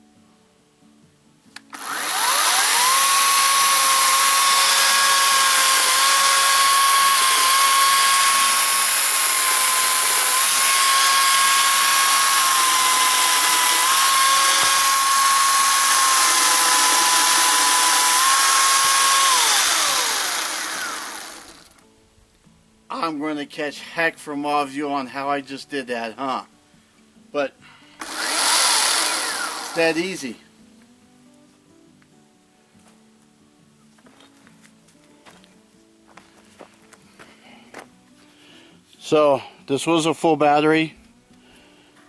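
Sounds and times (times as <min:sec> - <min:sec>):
electric chainsaw motor whining: 0:01.7 - 0:21.8, 0:28.0 - 0:30.4.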